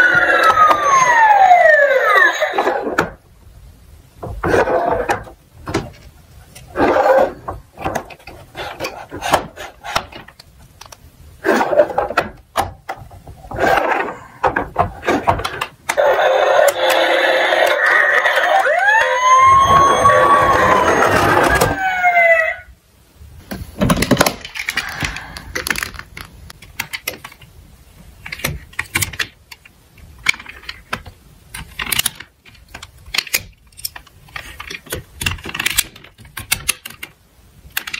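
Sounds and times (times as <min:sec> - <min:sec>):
toy siren wailing: 0:00.0 - 0:02.9, 0:16.0 - 0:22.6
steady electronic hiss: 0:00.0 - 0:18.0, 0:22.4 - 0:37.9
toy cars clicking and clattering: 0:24.0 - 0:27.4, 0:28.2 - 0:37.9.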